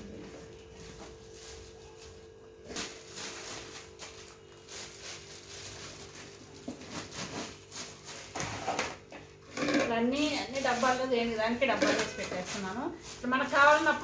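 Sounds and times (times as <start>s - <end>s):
plastic packets crinkling: 1.2s - 8.4s, 10.2s - 14.0s.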